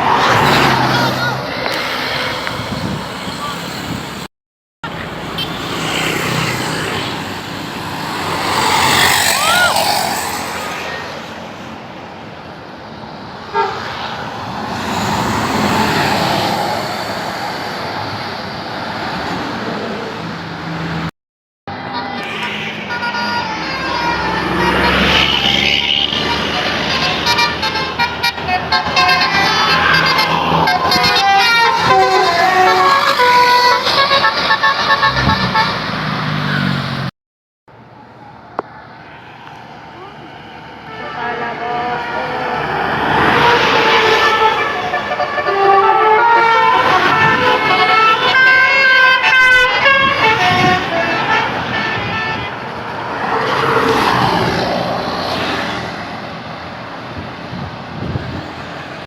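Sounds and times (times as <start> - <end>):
bus engine: 0.0 - 21.1, 21.7 - 37.1, 37.7 - 59.0
road traffic: 0.0 - 59.0
vehicle engine passing: 5.0 - 11.6, 29.4 - 37.1
car horn toot: 21.9 - 35.9, 40.8 - 52.6.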